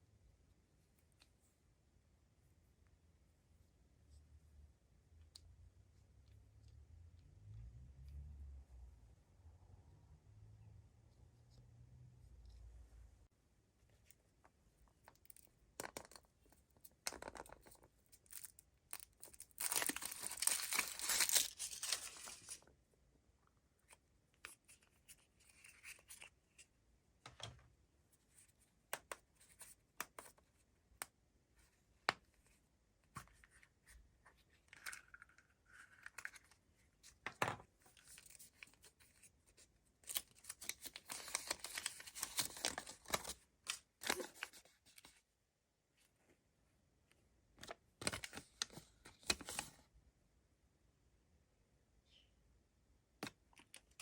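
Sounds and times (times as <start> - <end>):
foil wrapper crinkling: 19.2 - 22.6.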